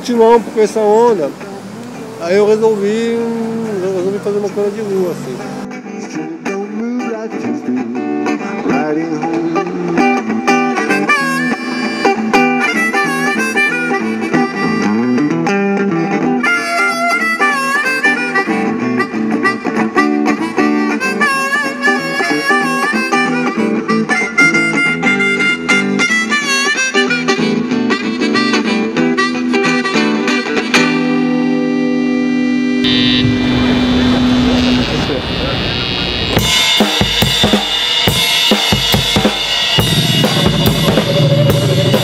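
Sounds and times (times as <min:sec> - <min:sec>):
guitar chords: 0:00.8 - 0:42.0
blues harmonica: 0:07.8 - 0:42.0.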